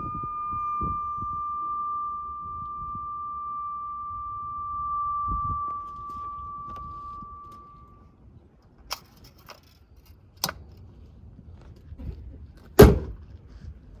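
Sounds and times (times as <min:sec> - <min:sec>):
whistle-like engine tone: 0:00.0 - 0:08.1.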